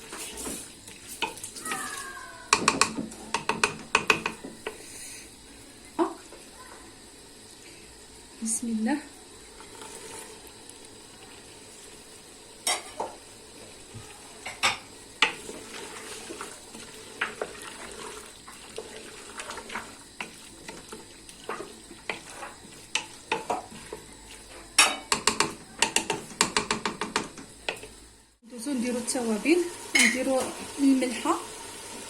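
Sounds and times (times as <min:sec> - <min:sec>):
vegetables sizzling in oil: 0:00.0 - 0:32.0
spoon stirring and knocking pot: 0:02.5 - 0:04.8, 0:18.8 - 0:28.0.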